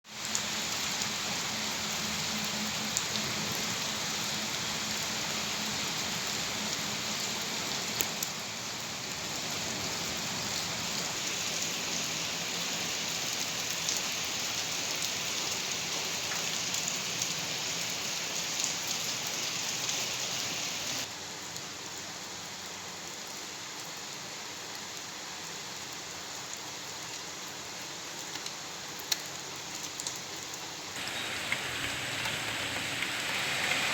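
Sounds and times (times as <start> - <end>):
steady rain falling: 0.0 - 33.9
raindrop ticks: 31.0 - 33.9.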